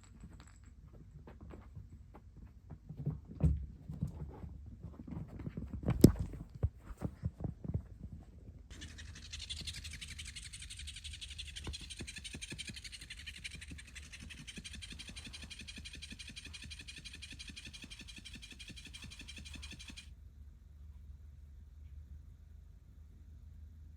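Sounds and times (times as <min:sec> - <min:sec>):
kitten purring: 0:08.7 - 0:20.1.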